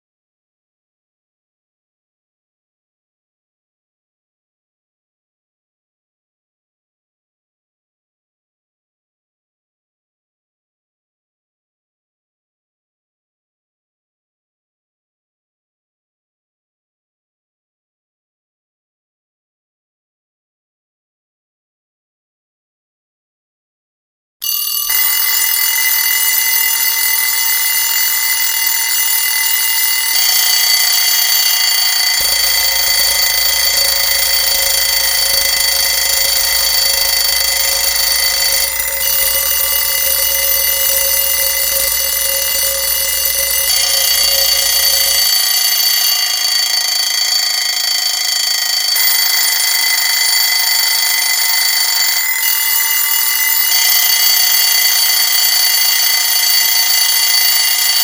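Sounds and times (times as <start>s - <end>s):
alarm clocks ringing: 24.4s - 58.0s.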